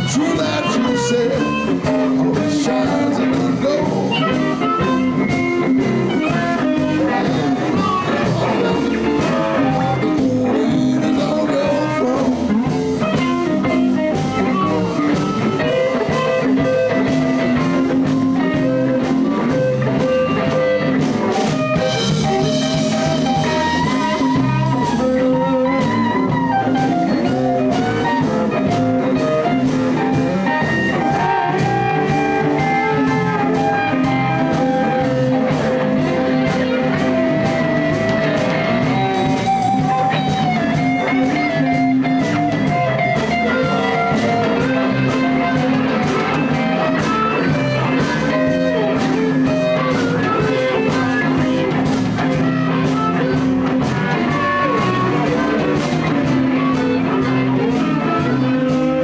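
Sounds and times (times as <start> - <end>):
electric guitar playing blues: 0.0 - 59.0
steady drum beat: 0.0 - 59.0.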